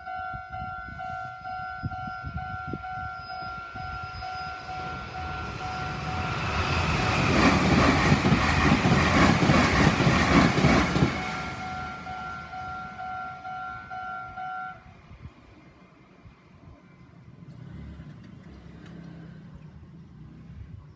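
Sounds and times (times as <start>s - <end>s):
train wheels clattering over rail joints: 5.9s - 11.3s.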